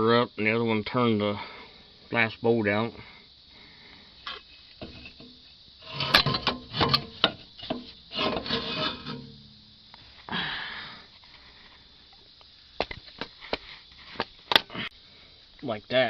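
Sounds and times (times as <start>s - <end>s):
metal scraping and rubbing: 4.7s - 9.7s
metal clunks: 4.8s - 9.9s.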